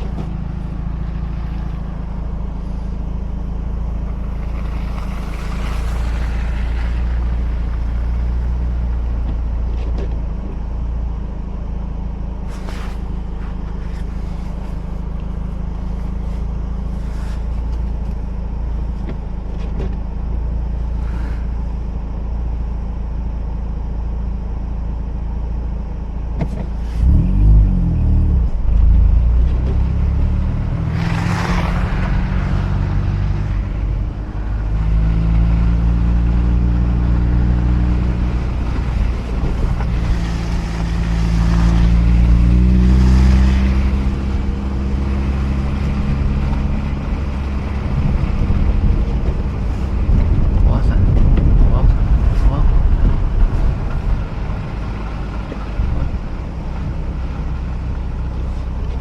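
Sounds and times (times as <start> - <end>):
rotary engine revving: 0.0 - 9.4, 26.6 - 59.0
tyres rumbling on snowy road: 0.0 - 59.0.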